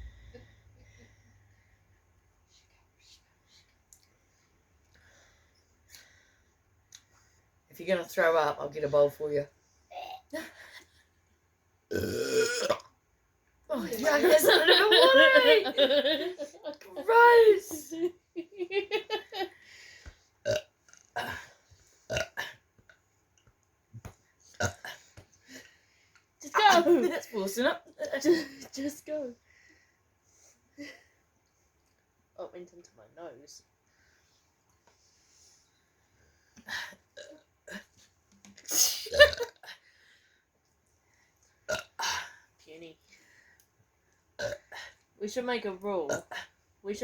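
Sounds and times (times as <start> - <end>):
person burping: 11.9 - 12.9, 20.5 - 21.5, 22.1 - 22.6, 24.6 - 25.0, 39.1 - 39.6, 41.7 - 42.3, 44.4 - 44.8.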